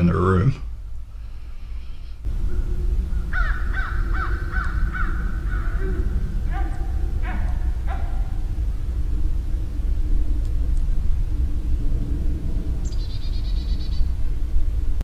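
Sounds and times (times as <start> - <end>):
low outdoor rumble: 0.0 - 15.0
harsh animal calls: 3.3 - 8.5.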